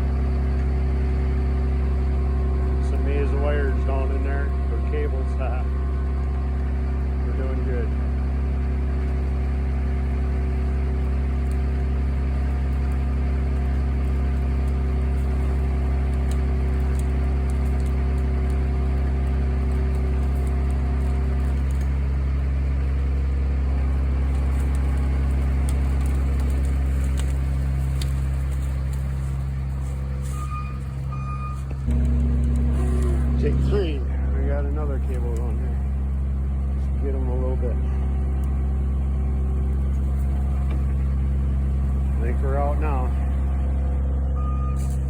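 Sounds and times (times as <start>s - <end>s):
diesel engine running: 0.0s - 45.0s
reversing beep: 30.2s - 31.8s, 44.3s - 45.0s.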